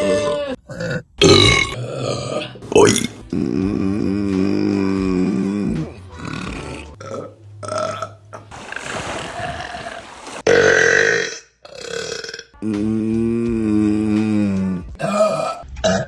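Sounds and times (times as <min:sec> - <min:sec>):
woman burping: 0:01.2 - 0:01.8, 0:02.8 - 0:03.2.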